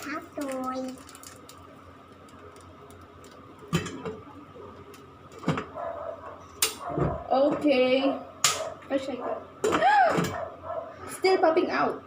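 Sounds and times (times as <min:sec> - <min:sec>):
popcorn popping in a covered pot: 0:00.0 - 0:05.7.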